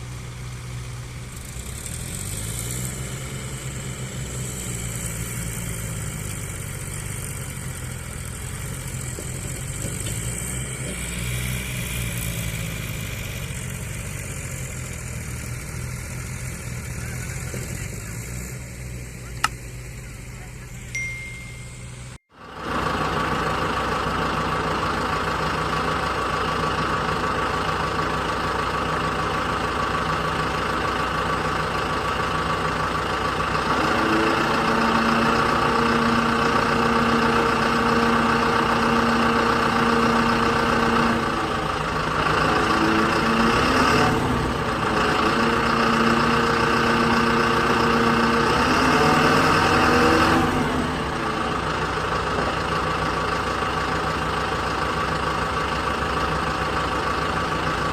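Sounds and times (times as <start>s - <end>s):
diesel engine running: 0.0s - 57.9s.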